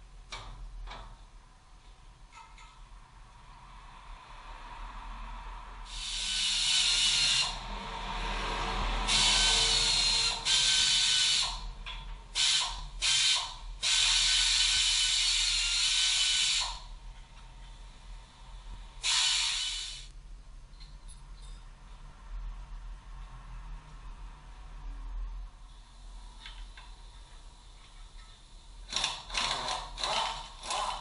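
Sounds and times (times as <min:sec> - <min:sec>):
pneumatic air tool hissing: 0:05.9 - 0:07.6, 0:09.0 - 0:11.7, 0:12.4 - 0:16.9, 0:19.0 - 0:20.1.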